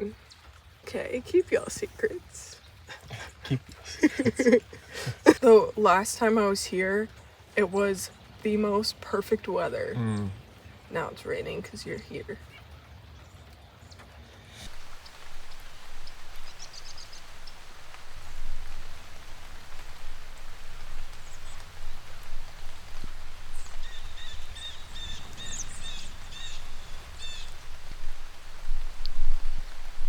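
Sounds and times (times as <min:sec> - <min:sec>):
rain falling: 0:00.0 - 0:30.0
bird chirping: 0:14.6 - 0:29.7.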